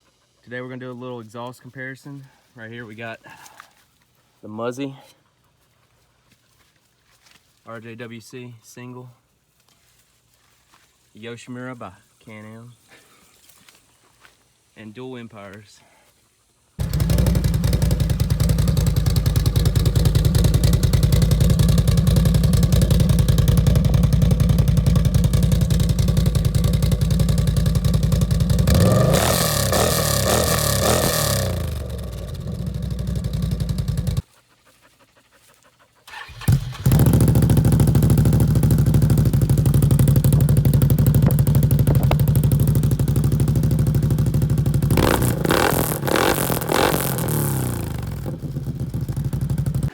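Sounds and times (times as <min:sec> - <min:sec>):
atv engine idling and revving: 0:16.8 - 0:34.3, 0:36.1 - 0:49.9.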